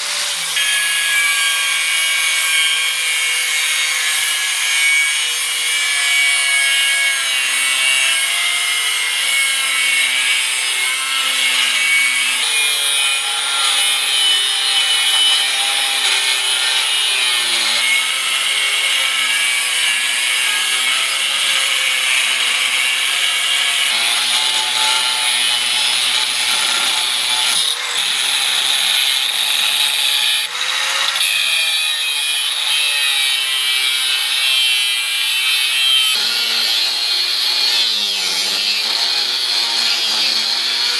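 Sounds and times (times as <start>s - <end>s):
grinding on steel knife blade: 23.7s - 33.1s.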